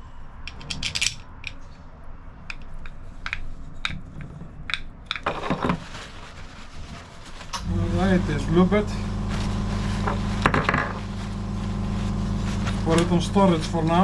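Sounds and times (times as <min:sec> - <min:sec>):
small metal parts clinking: 0:00.5 - 0:01.6.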